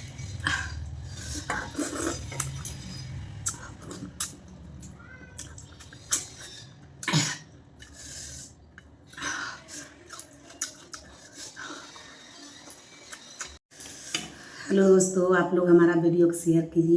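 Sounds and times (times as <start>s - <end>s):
person chewing crunchy food: 0.0s - 7.0s, 9.8s - 13.6s.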